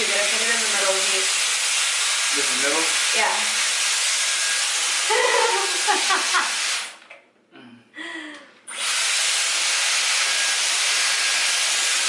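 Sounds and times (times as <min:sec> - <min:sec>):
hair dryer blowing air: 0:00.0 - 0:07.1, 0:08.7 - 0:12.0.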